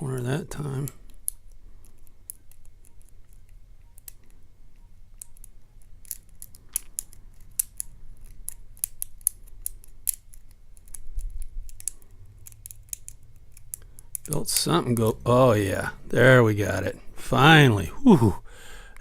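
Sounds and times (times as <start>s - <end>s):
lock pick metallic clicks: 0.8s - 15.2s.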